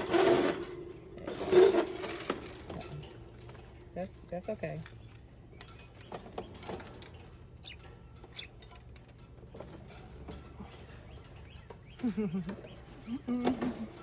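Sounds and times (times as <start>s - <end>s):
pet birds chirping: 3.4s - 9.0s, 10.4s - 13.3s.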